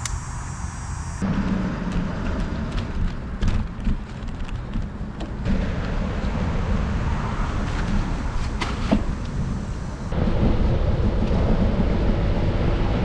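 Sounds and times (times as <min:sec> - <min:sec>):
wind buffeting microphone: 0:01.2 - 0:13.0.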